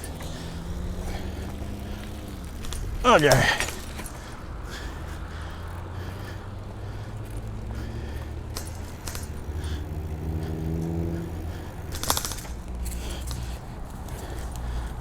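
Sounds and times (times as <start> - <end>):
rumble of tyres and wind: 0.0 - 15.0
rattling clicks: 11.8 - 14.9.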